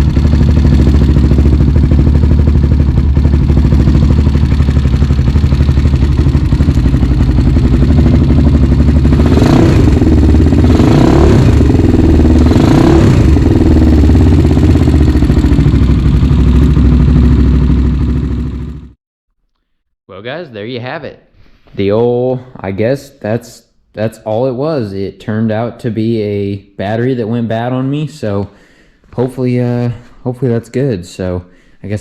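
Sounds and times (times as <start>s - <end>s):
quad engine idling: 0.0s - 18.9s.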